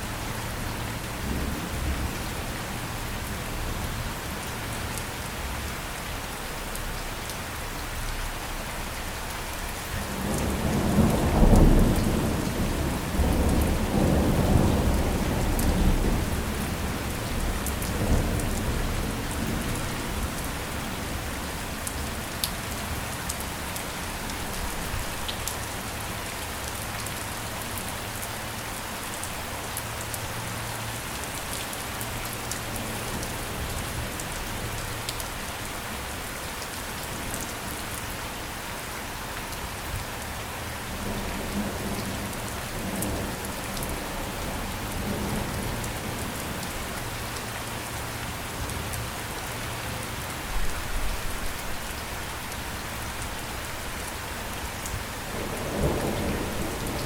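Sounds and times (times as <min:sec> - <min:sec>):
rain pattering: 0:00.0 - 0:57.0
thunder rumbling: 0:55.3 - 0:57.0.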